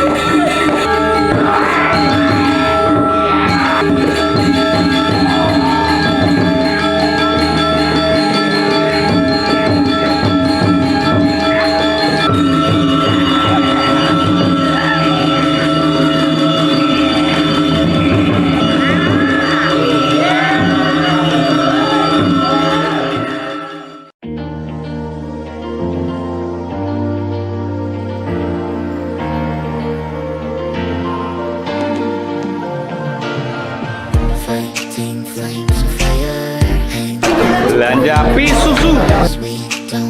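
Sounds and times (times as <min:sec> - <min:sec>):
background music with sustained chords: 0:24.2 - 0:34.2.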